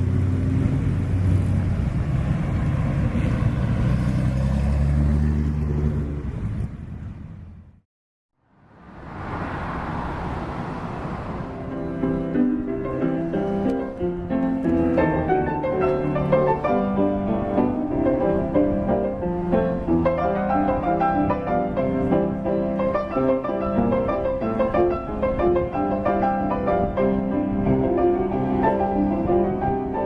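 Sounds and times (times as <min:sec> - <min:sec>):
classical piano music: 0:11.5 - 0:30.0.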